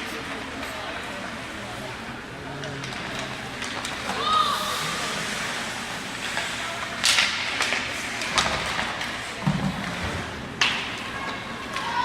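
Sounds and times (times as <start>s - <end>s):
sticks and puck cracking: 2.6s - 4.4s, 6.2s - 9.2s
skates scraping on ice: 2.8s - 12.0s.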